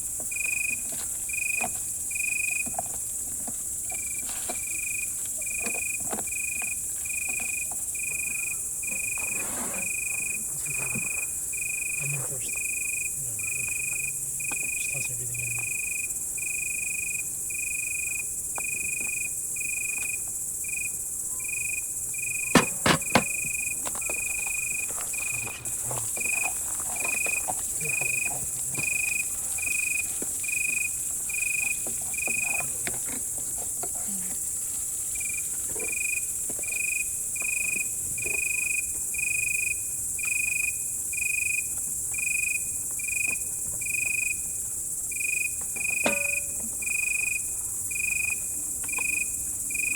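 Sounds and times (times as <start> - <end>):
crickets chirping: 0.0 - 49.9
high insect hiss: 0.0 - 49.9
faint clatters: 21.5 - 38.5
sharp knocks: 22.4 - 24.2, 46.0 - 46.7.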